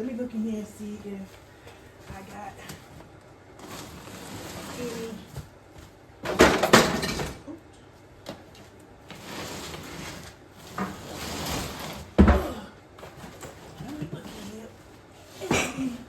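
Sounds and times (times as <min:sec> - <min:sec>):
objects clattering and clinking: 0:06.2 - 0:07.5.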